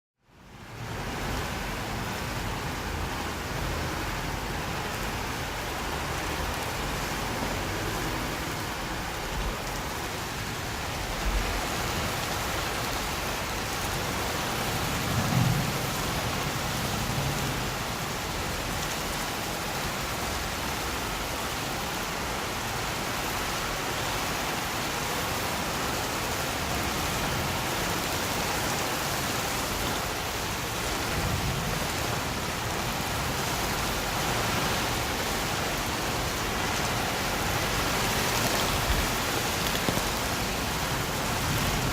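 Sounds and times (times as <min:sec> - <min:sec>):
steady rain: 0:00.2 - 0:41.9
thunder rumbling: 0:14.6 - 0:18.5, 0:37.4 - 0:41.9.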